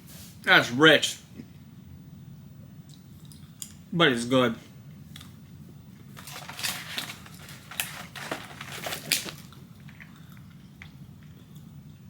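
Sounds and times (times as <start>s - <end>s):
plastic packaging crinkling: 6.1s - 10.6s.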